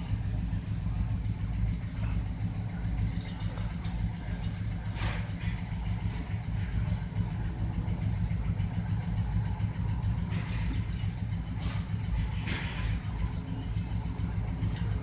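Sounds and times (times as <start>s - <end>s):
vehicle engine idling: 0.0s - 15.0s.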